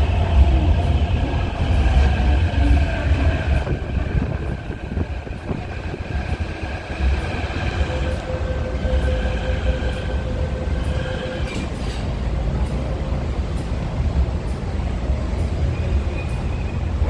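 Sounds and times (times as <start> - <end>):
high whine: 0.0 - 12.8
train rumbling through station: 0.0 - 17.0.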